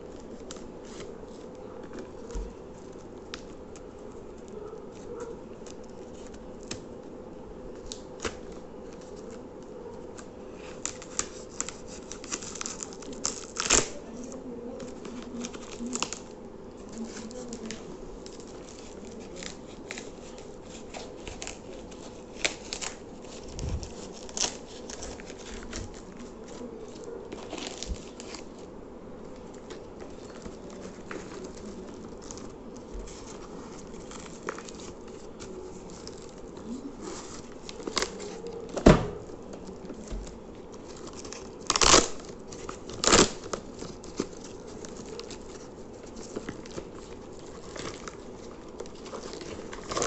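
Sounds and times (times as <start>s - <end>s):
packaging tearing and crinkling: 10.1s - 14.2s, 14.8s - 28.7s, 29.3s - 50.0s.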